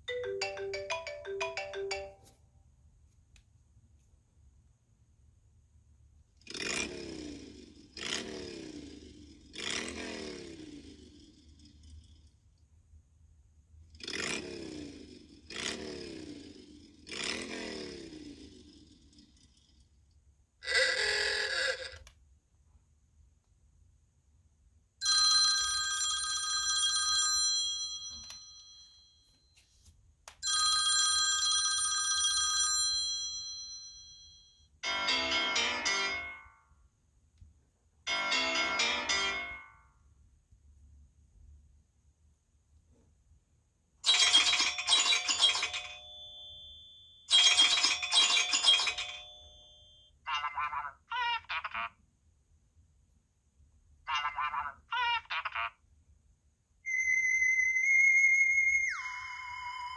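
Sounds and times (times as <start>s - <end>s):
bell-like phone ringtone: 0.0s - 2.3s, 25.0s - 29.4s, 30.4s - 36.6s, 38.1s - 39.8s, 44.0s - 50.1s.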